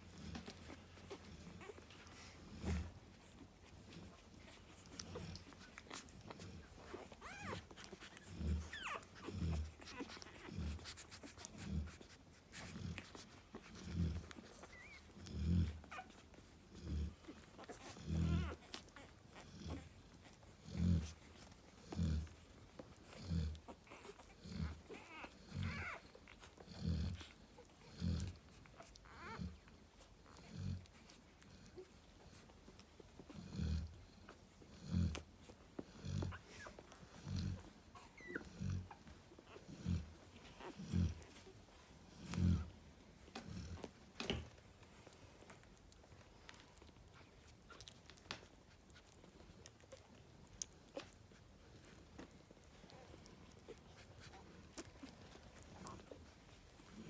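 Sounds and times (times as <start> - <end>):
dog whimpers: 0.2 - 57.0
dog snoring: 4.4 - 32.0, 33.2 - 44.6.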